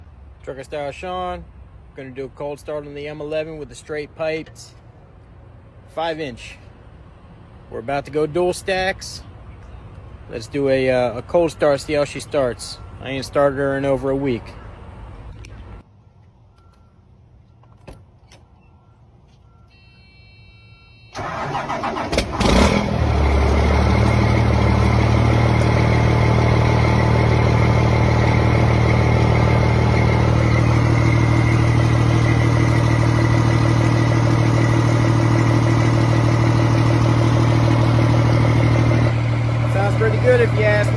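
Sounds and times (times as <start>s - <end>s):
short beeps: 18.4s - 21.2s
diesel engine cranking: 21.1s - 40.9s
diesel engine idling loud: 21.2s - 40.9s.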